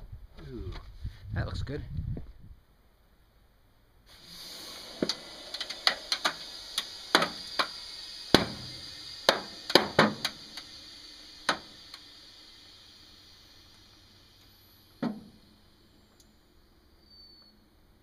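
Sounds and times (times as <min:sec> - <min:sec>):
compressed air hissing: 0:04.1 - 0:17.6
sharp cracks and pops: 0:04.8 - 0:12.1.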